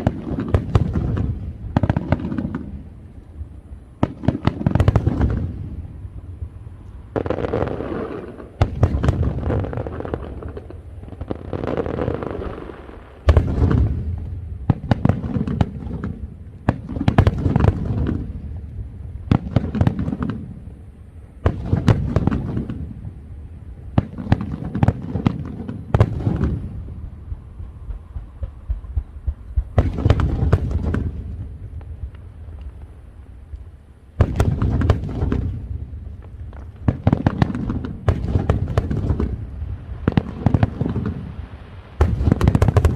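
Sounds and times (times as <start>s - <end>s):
fireworks bangs: 0.0s - 42.9s
fireworks crackle: 0.0s - 42.9s
rumbling echoes: 26.1s - 32.9s.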